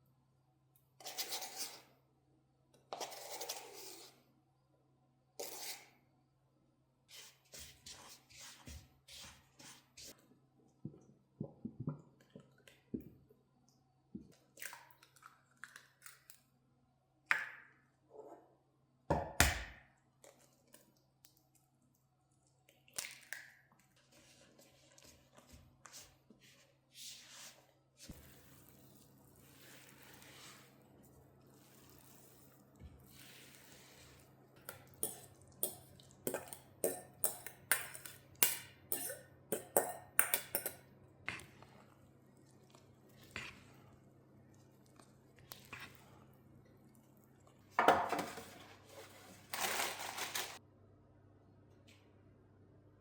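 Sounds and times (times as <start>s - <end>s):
brushing sounds: 7.1s - 10.2s, 24.1s - 30.8s.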